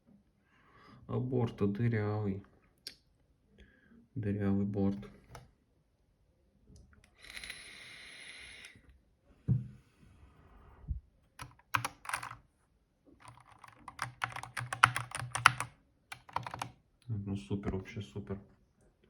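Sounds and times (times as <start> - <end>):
mechanical keyboard typing: 11.4 - 12.4, 13.2 - 16.7.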